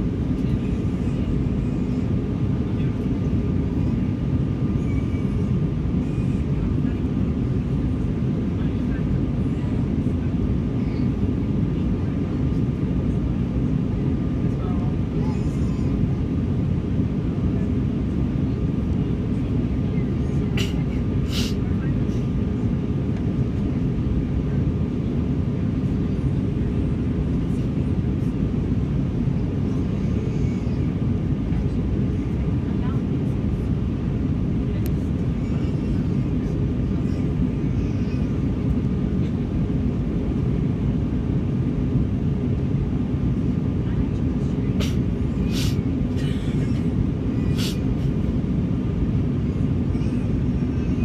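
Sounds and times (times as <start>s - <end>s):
airplane engine and airflow rumble: 0.0s - 51.0s
faint steady whine: 0.0s - 51.0s
brief hisses: 44.8s - 45.8s.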